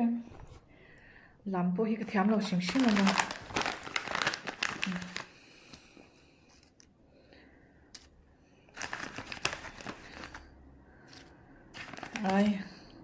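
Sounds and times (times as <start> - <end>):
crinkling and rustling: 2.0 - 5.8, 8.7 - 10.5, 11.1 - 12.7.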